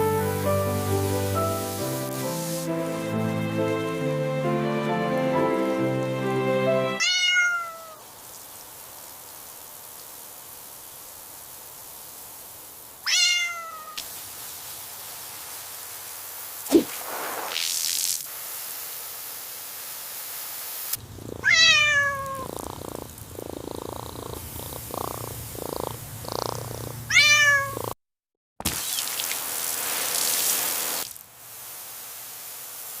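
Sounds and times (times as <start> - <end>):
cat meowing: 7.0 - 8.0, 13.0 - 14.0, 21.3 - 22.6, 27.1 - 27.9
cat purring: 21.0 - 28.0.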